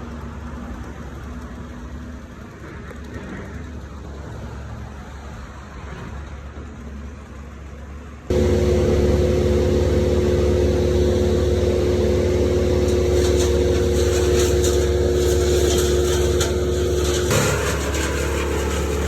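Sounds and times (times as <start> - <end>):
engine running steadily: 8.0 - 19.0.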